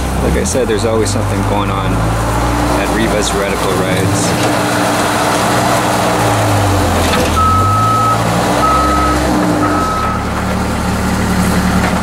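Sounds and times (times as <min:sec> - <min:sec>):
engine running: 0:00.0 - 0:12.0
vehicle backup alarm beeping: 0:07.4 - 0:10.4.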